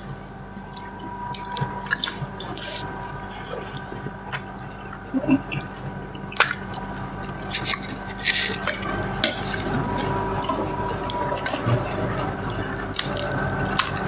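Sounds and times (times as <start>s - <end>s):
steady hum: 0.0s - 14.0s
crisp food chewing: 3.8s - 14.0s.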